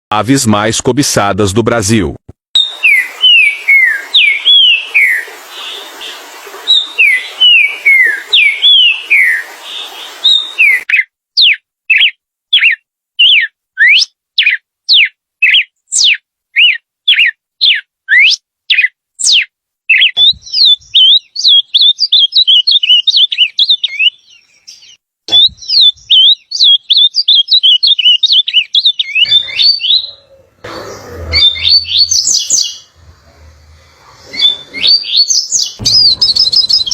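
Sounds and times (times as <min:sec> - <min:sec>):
falling whistled bird notes: 0:02.6 - 0:05.3, 0:29.1 - 0:36.9
fast warbling bird twitter: 0:02.6 - 0:36.9
background hiss: 0:30.3 - 0:36.9
quick rising bird whistles: 0:34.3 - 0:36.9.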